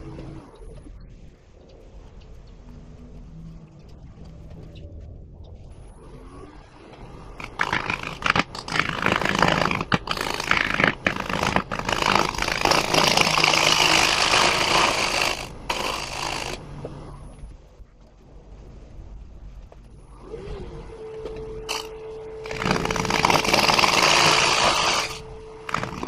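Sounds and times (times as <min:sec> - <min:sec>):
tool scraping wood on lathe: 0:07.4 - 0:16.6, 0:21.7 - 0:26.0.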